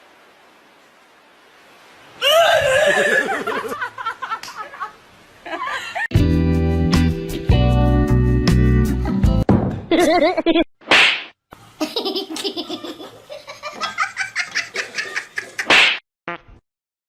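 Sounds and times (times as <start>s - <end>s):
person laughing: 2.2s - 6.1s, 9.9s - 10.6s, 11.8s - 15.7s.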